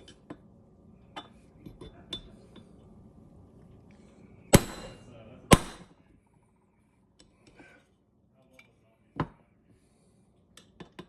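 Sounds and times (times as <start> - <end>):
hammer tapping metal: 4.5 - 5.8
hard ringing hammer strike: 4.5 - 5.9.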